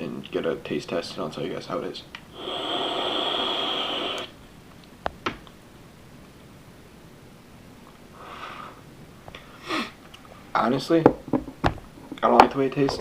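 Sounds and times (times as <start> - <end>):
person exhaling: 2.3 - 4.4, 8.2 - 8.8, 9.5 - 10.0.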